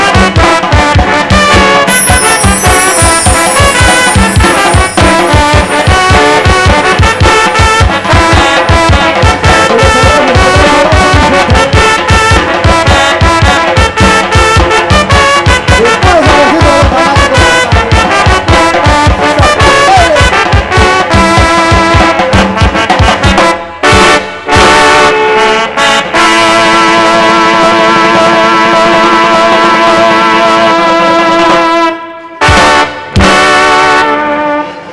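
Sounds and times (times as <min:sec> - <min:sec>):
bass drum beat: 0:00.0 - 0:24.9
trumpets and trombones: 0:00.0 - 0:34.9.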